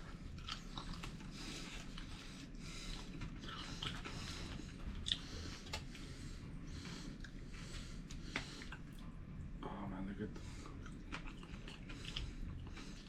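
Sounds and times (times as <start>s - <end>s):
chewing crispy fried fish: 0.0s - 6.0s, 10.6s - 13.0s.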